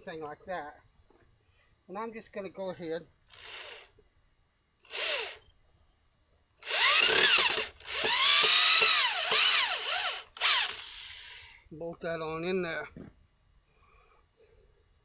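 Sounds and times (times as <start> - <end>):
power drill driving screws: 3.3 - 3.9, 4.9 - 5.4, 6.6 - 11.4.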